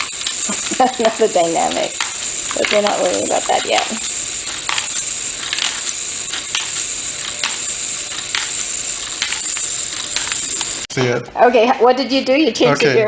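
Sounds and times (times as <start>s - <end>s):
plastic gears rattling: 0.0s - 10.8s.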